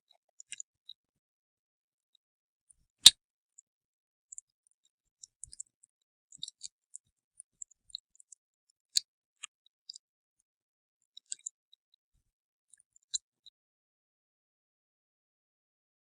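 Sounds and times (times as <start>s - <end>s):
light crisp clicks and ticks: 0.1s - 1.0s, 4.3s - 13.6s.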